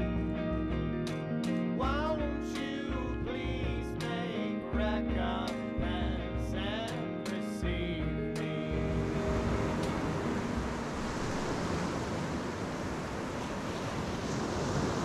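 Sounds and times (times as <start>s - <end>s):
acoustic guitar: 0.0s - 11.5s
person singing: 1.8s - 10.0s.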